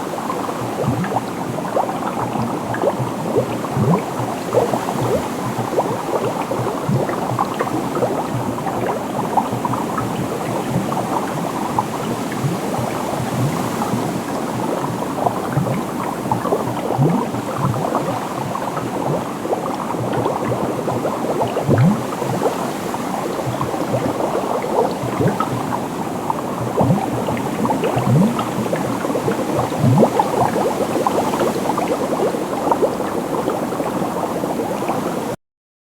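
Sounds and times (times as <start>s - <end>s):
water bubbling and gurgling: 0.0s - 35.4s.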